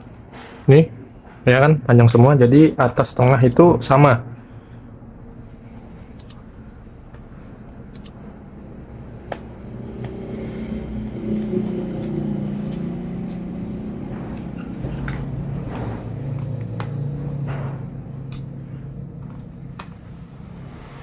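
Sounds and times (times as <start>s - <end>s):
vehicle engine running: 4.4s - 21.0s.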